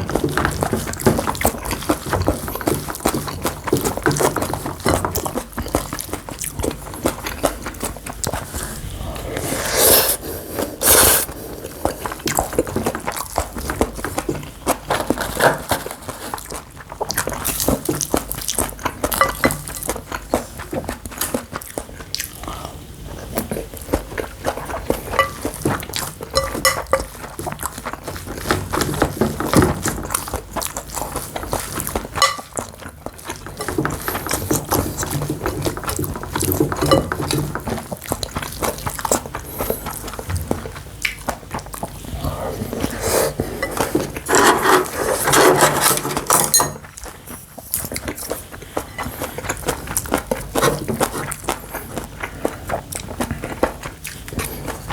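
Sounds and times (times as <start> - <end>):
eating sounds: 0.0 - 54.9
spoon clinking against bowl: 26.4 - 27.2, 32.2 - 32.5, 46.3 - 46.9.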